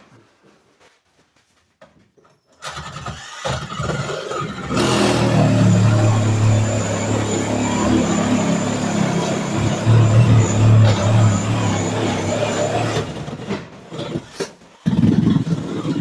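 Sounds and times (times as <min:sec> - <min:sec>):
motor-driven machine humming: 0:04.8 - 0:13.2.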